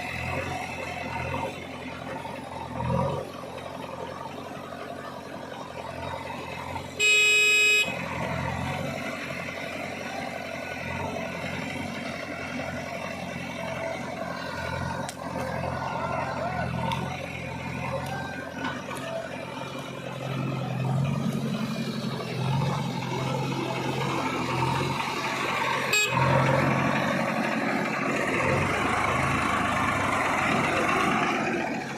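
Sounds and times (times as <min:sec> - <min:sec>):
diesel engines running: 0:00.0 - 0:31.9
vehicle horn honk: 0:07.0 - 0:08.0, 0:25.9 - 0:26.4.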